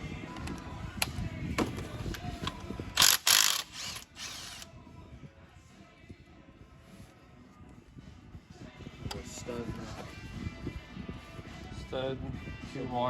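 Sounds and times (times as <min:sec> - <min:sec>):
ratchet wrench clicking: 0:03.0 - 0:04.7.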